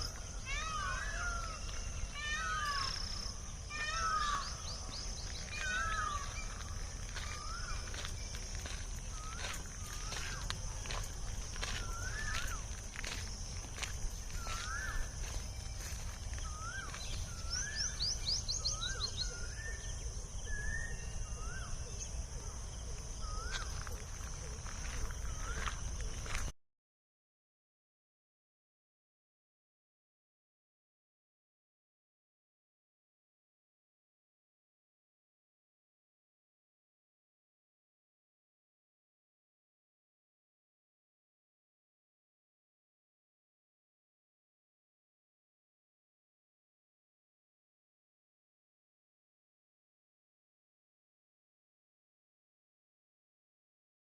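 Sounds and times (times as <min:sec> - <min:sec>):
bird high chirps: 0:00.0 - 0:26.5.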